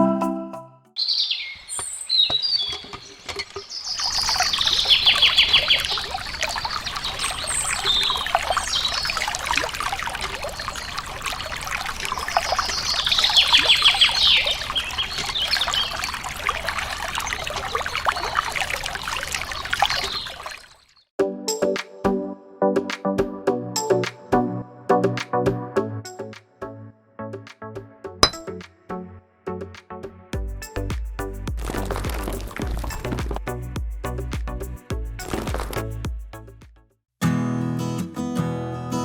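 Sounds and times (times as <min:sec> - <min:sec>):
birds chirping: 0:01.0 - 0:09.2
water pouring and trickling: 0:02.7 - 0:21.0, 0:30.8 - 0:36.1.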